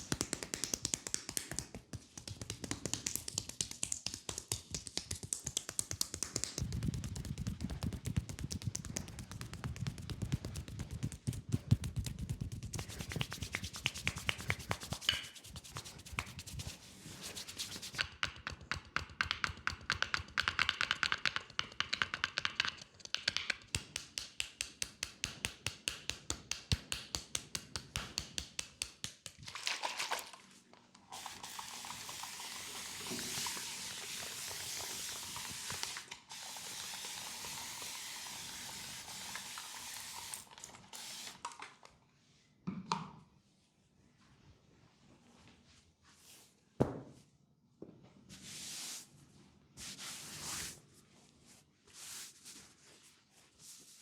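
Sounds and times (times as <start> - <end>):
hands slapping legs in massage: 0.0 - 29.6.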